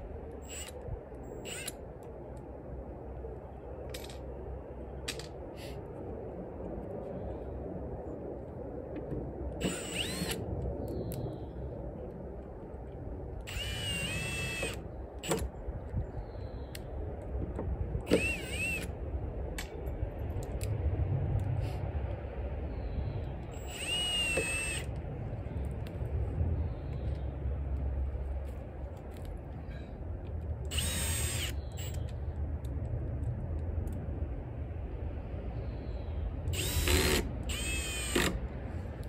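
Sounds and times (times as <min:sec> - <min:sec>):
electric screwdriver motor whine: 0:00.4 - 0:01.8, 0:09.6 - 0:10.4, 0:13.5 - 0:15.4, 0:18.1 - 0:18.9, 0:23.5 - 0:24.9, 0:30.7 - 0:32.0, 0:36.6 - 0:38.4.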